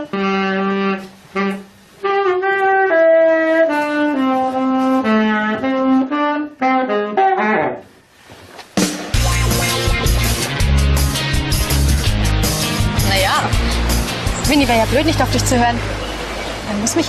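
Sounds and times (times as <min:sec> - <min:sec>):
saxophone playing slow melody: 0:00.0 - 0:08.0.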